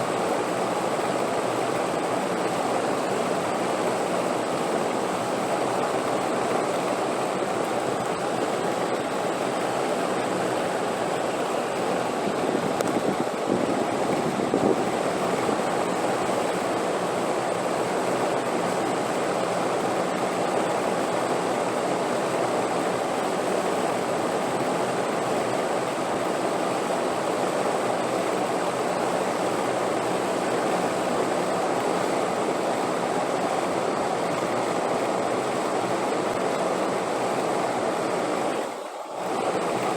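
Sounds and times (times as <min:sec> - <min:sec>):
rushing wind: 0:07.3 - 0:19.2.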